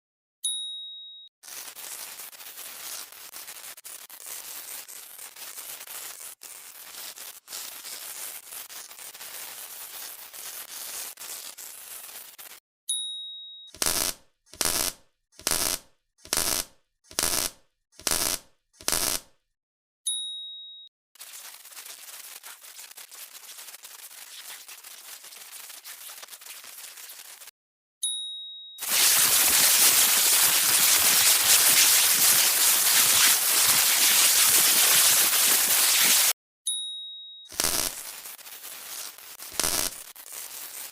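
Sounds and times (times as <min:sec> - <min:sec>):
ding: 0:00.4 - 0:01.3, 0:12.9 - 0:13.8, 0:20.1 - 0:20.9, 0:28.0 - 0:28.8, 0:36.7 - 0:37.6
electric zap crackling bursts: 0:01.4 - 0:04.4, 0:09.8 - 0:12.6, 0:13.8 - 0:19.3, 0:28.8 - 0:36.4, 0:37.5 - 0:40.9.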